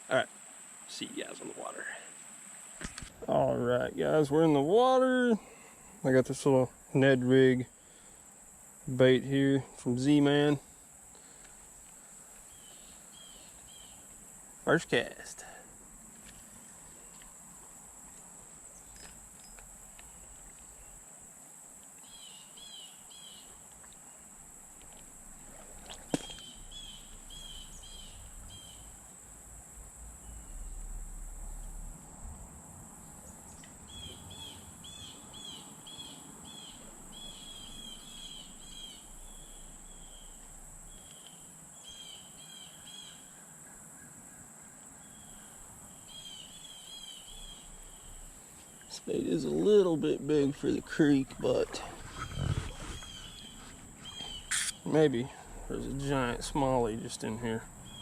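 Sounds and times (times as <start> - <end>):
high insect drone: 0.0 - 58.0
bird chirping: 12.5 - 14.1, 26.1 - 29.0, 33.1 - 43.3, 45.0 - 49.7, 50.4 - 58.0.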